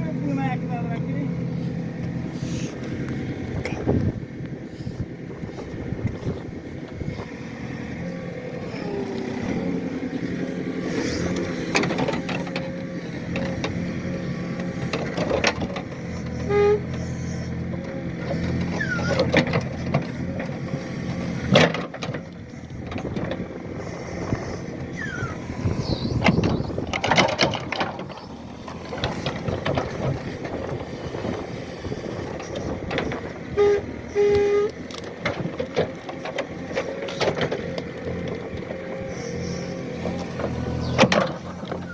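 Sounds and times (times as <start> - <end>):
excavator diesel engine running: 0.0 - 41.9
short squeals: 18.3 - 19.3, 23.9 - 27.0, 40.5 - 41.9.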